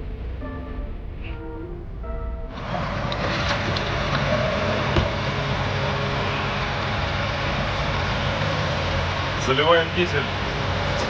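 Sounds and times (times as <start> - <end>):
car and road noise: 0.0 - 11.0
music: 0.0 - 11.0.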